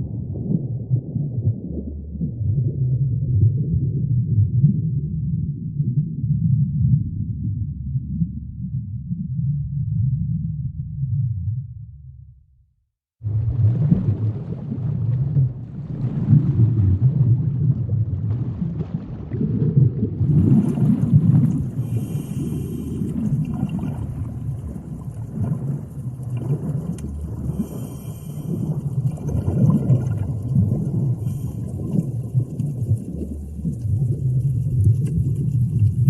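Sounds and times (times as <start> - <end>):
low uneven rumbling: 13.2 - 36.0.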